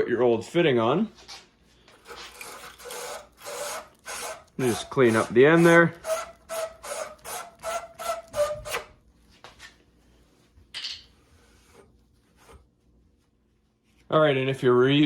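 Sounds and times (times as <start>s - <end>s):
brush scrubbing copper pipe: 2.0s - 8.8s, 11.2s - 14.1s.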